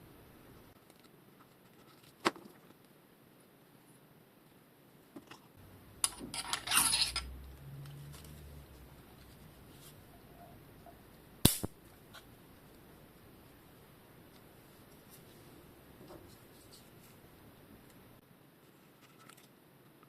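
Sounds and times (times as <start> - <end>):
metal parts clattering: 6.0 - 7.3
small metal parts clinking: 6.0 - 7.4
sharp metallic clicks: 11.4 - 11.8.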